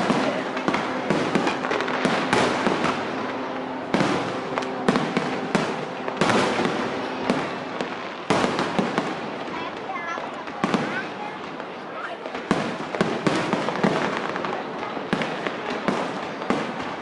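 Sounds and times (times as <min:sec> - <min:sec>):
firework shells bursting: 0:00.0 - 0:09.9
fireworks crackling: 0:00.0 - 0:17.0.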